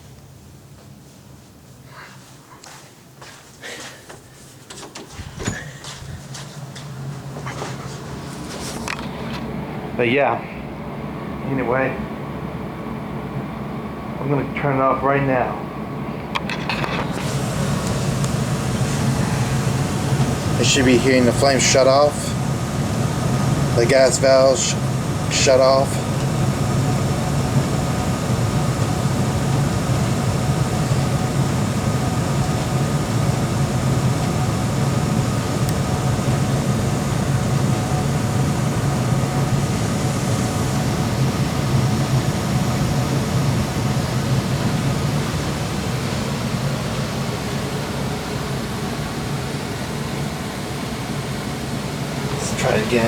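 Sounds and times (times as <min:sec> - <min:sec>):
gas furnace humming: 0:00.0 - 0:53.0
faint steady tones: 0:17.2 - 0:53.0.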